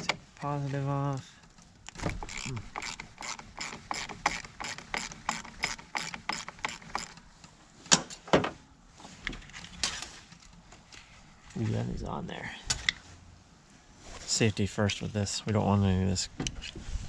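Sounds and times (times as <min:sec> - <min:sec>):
sharp clicks and knocks: 0:01.5 - 0:08.5
ratchet wrench clicking: 0:02.2 - 0:07.2.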